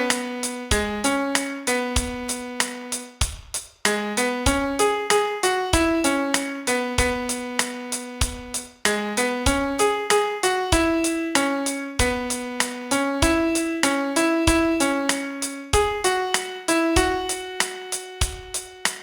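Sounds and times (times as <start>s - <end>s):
slow piano melody: 0.0s - 3.2s, 3.9s - 19.0s.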